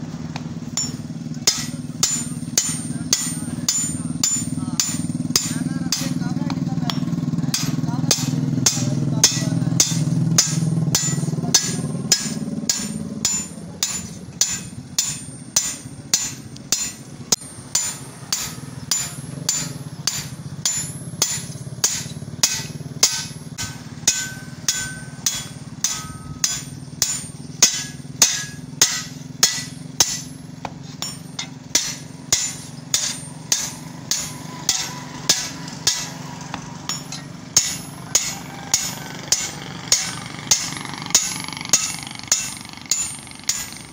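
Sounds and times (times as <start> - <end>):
hammering: 0.3 - 43.9.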